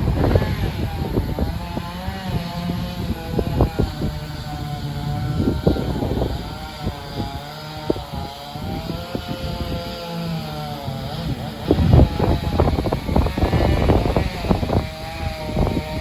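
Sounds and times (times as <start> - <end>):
low rumbling: 0.0 - 9.9
drone propellers whining: 0.0 - 16.0.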